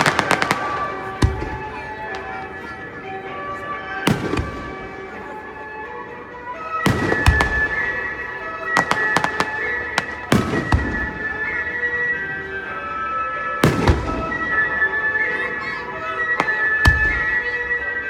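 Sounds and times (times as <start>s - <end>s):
fireworks booms: 0.0s - 2.3s, 4.1s - 4.8s, 6.9s - 8.1s, 8.7s - 11.5s, 13.6s - 14.6s, 16.4s - 17.5s
fireworks bangs and crackles: 0.0s - 2.9s, 4.0s - 5.0s, 6.8s - 11.7s, 13.6s - 15.5s, 16.2s - 17.8s
music with long held notes: 0.0s - 18.0s.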